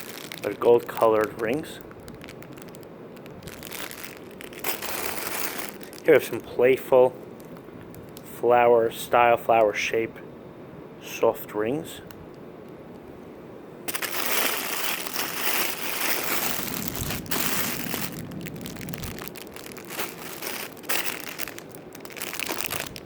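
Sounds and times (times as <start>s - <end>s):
packaging crinkling and rustling: 0.0s - 6.5s, 13.9s - 23.0s.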